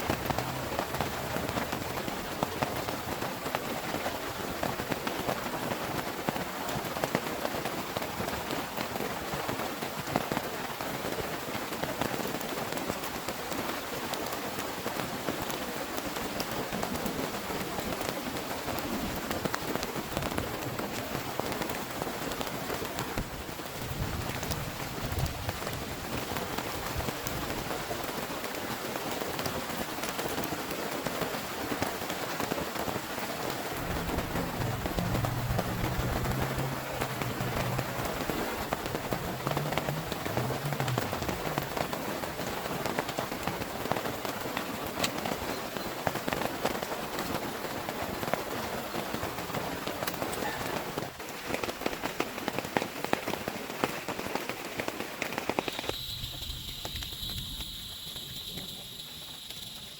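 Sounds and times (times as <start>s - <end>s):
heavy rain falling: 0.0s - 59.9s
raindrops striking close by: 0.0s - 59.9s
low rumble: 33.7s - 42.7s.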